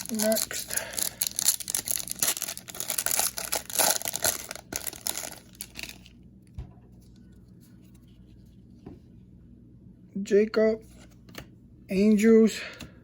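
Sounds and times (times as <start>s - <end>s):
plastic foil wrapper tearing and crinkling: 0.0s - 6.1s.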